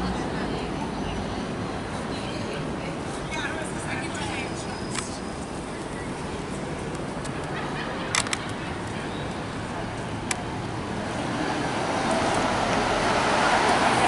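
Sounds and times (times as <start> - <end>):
city street traffic: 0.0 - 14.0
vehicle approaching: 5.5 - 14.0.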